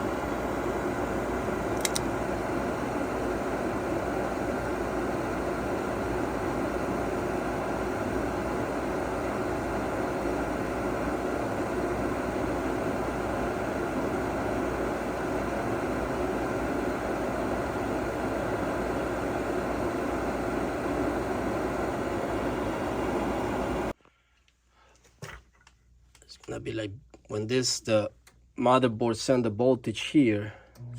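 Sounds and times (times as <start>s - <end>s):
furnace fan whooshing: 0.0s - 24.0s.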